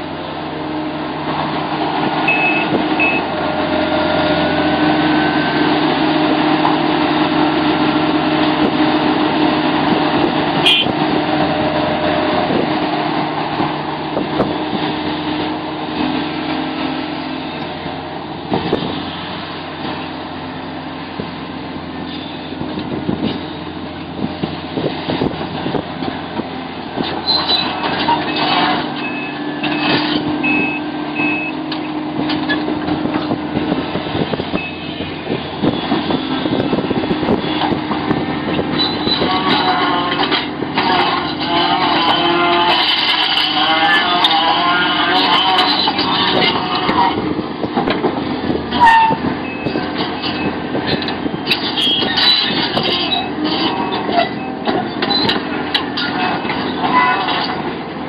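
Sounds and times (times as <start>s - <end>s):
excavator running under load: 0.0s - 58.0s
reversing alarm beeping: 2.3s - 3.3s, 29.0s - 31.6s, 34.5s - 35.1s.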